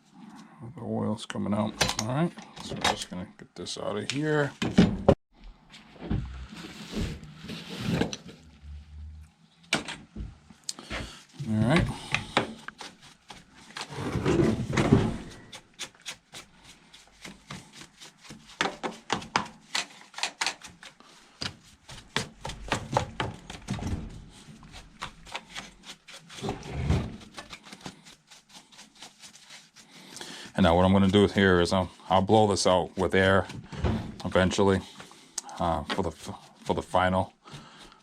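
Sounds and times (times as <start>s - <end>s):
scraping rub: 6.3s - 9.3s, 10.8s - 32.2s.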